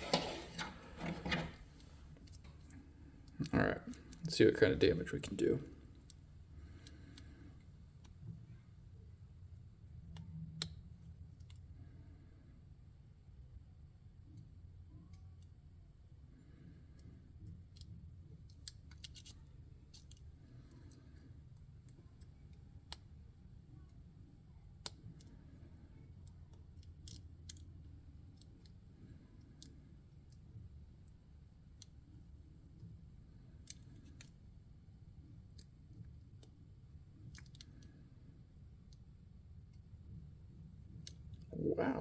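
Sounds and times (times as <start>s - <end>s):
lock pick clicking in padlock: 18.5s - 20.3s, 37.3s - 37.9s.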